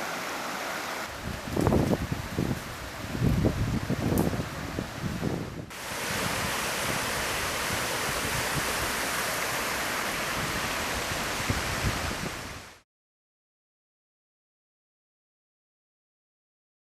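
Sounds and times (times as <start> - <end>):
river rushing: 0.0 - 12.8.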